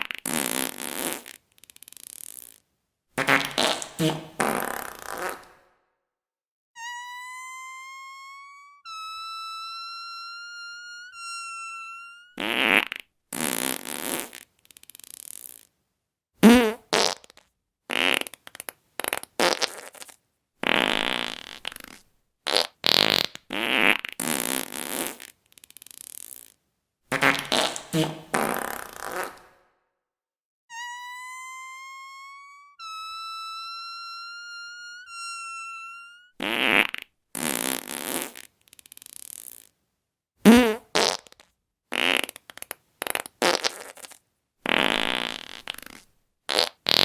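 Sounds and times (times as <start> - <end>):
fart sounds: 0.0 - 2.6, 3.2 - 5.7, 12.2 - 15.7, 16.4 - 29.6, 35.9 - 39.7, 40.4 - 47.0
high whistling tone: 6.8 - 12.4, 30.7 - 36.3.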